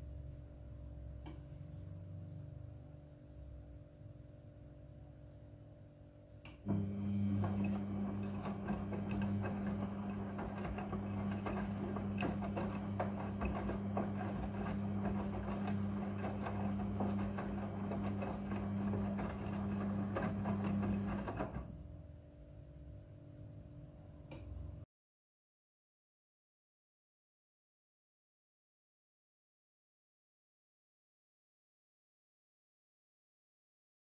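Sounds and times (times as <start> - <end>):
washing machine hum: 6.6 - 22.1.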